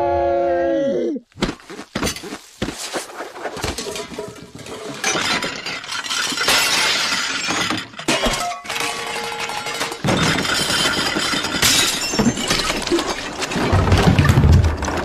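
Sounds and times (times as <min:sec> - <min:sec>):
things clattering and breaking: 0:03.5 - 0:15.0
glass shattering: 0:03.6 - 0:14.9.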